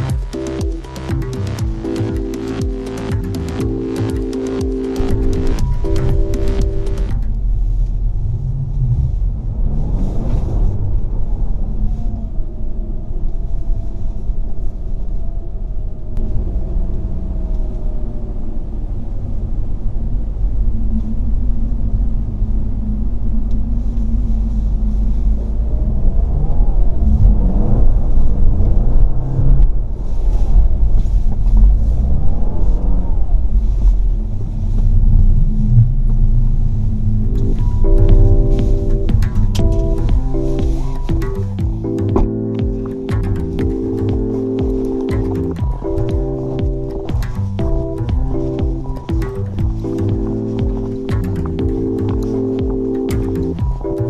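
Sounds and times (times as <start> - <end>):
car driving in snow: 5.1 - 41.2.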